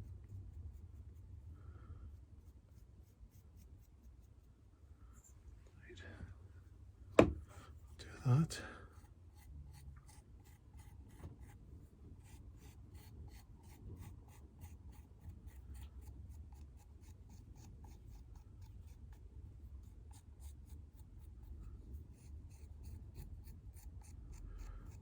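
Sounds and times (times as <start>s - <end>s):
tool scratching clay: 7.9s - 25.0s.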